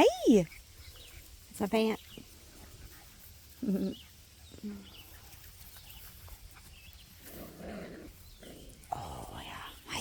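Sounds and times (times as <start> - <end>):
faint bird chirps: 3.1 - 7.2
puppy growling: 7.2 - 9.4.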